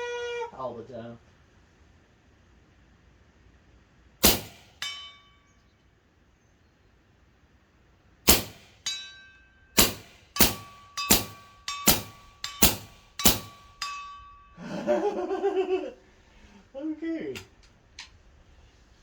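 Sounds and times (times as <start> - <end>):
air rifle shots: 4.2 - 5.0, 8.2 - 8.9, 9.8 - 13.9
pellet clanging on steel target: 4.2 - 5.4, 8.3 - 14.4.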